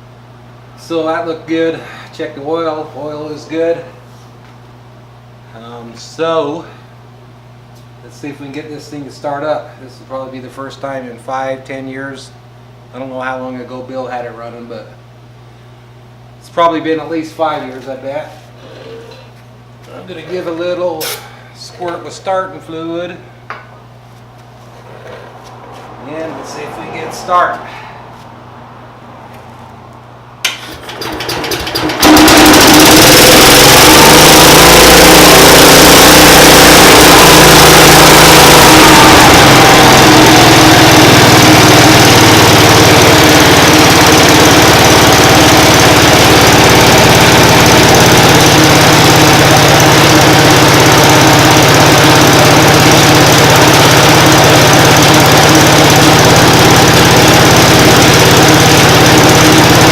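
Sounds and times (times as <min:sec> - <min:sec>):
tractor engine cranking and running: 0:30.4 - 0:59.9.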